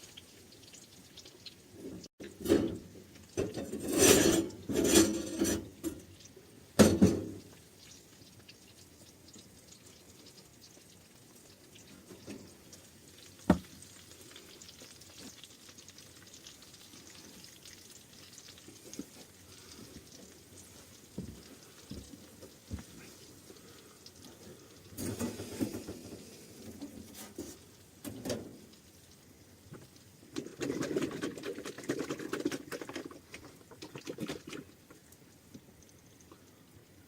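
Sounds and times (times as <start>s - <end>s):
small knocks and thumps: 13.4s - 13.8s, 21.1s - 23.1s.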